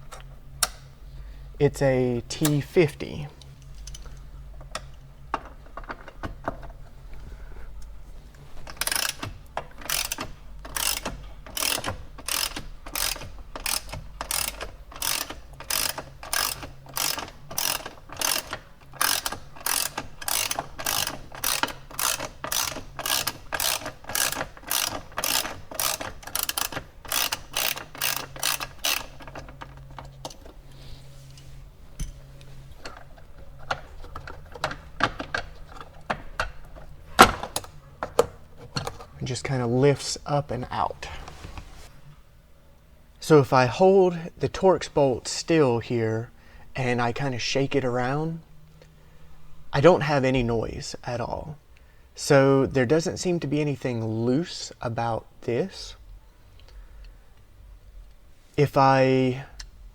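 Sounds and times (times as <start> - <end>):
socket ratchet clicking: 8.6 - 30.5.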